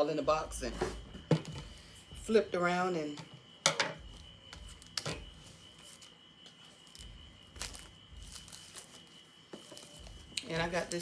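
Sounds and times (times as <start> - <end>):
cardboard packaging handled: 4.7 - 11.0.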